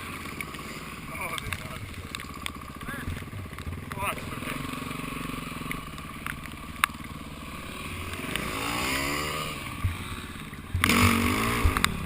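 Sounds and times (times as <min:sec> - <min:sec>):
dirt bike engine revving: 0:00.0 - 0:12.0.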